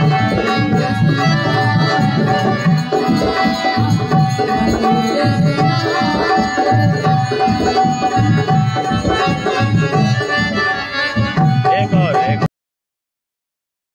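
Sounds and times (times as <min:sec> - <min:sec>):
tabla playing a rhythm: 0:00.0 - 0:12.5.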